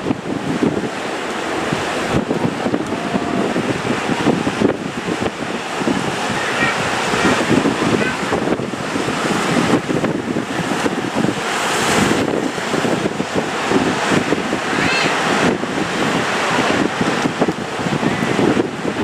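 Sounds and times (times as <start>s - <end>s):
ocean surf breaking: 0.0s - 19.0s
wind buffeting microphone: 0.0s - 19.0s.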